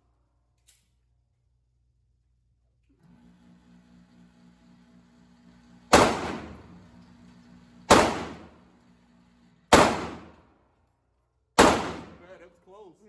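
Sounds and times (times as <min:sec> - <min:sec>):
gunshots with ringing echo: 0:05.9 - 0:06.7, 0:07.9 - 0:08.5, 0:09.7 - 0:10.4, 0:11.6 - 0:12.3.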